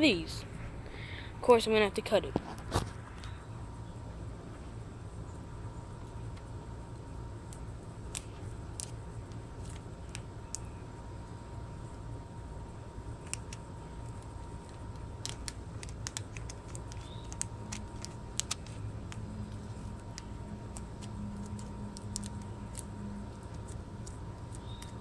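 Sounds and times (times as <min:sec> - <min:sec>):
velcro strips clicking: 0:07.5 - 0:10.7, 0:13.2 - 0:25.0
scissors snipping: 0:13.2 - 0:25.0.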